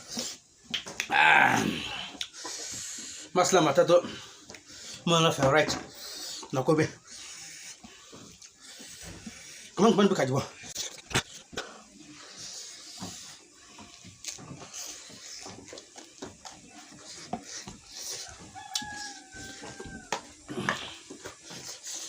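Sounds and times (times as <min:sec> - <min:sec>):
rooster crowing: 0:18.0 - 0:21.0.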